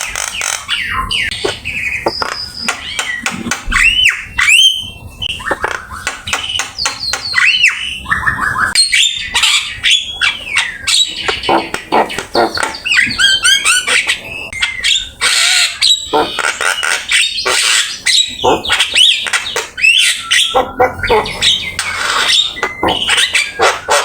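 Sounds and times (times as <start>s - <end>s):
myna singing whistles and clicks: 1.3s - 9.2s, 16.1s - 24.0s.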